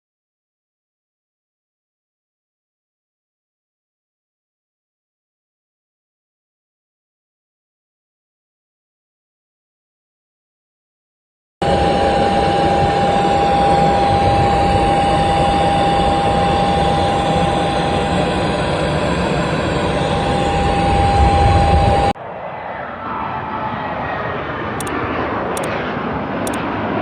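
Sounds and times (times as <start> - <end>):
airplane engines whining: 11.6 - 27.0.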